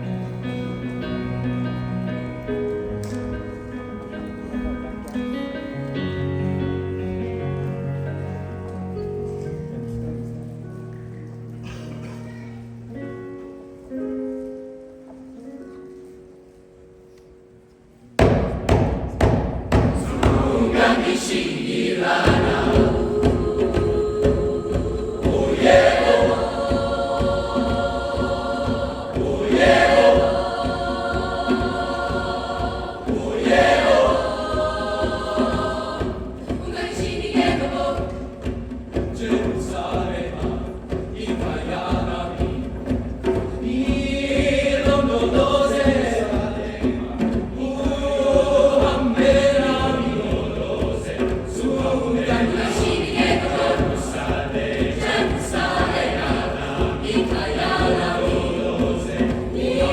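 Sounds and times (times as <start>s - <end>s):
choir singing sustained chords: 19.8s - 59.9s.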